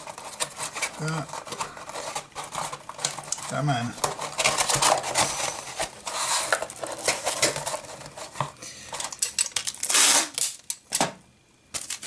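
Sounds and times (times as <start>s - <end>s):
rustling scrape: 0.0s - 9.1s
items clattering into cardboard box: 0.0s - 10.0s.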